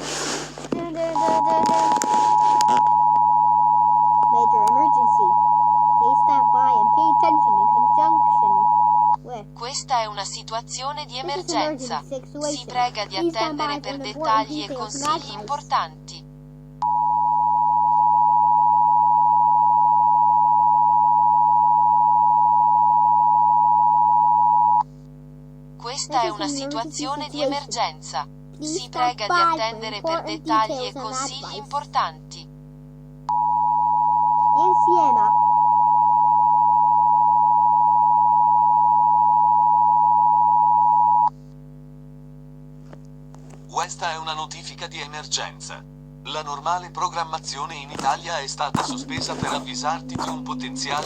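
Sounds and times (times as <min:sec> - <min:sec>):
steady low hum: 0:00.0 - 0:51.0
loud steady electronic alert tone: 0:01.0 - 0:09.2, 0:11.0 - 0:15.7, 0:26.0 - 0:27.5.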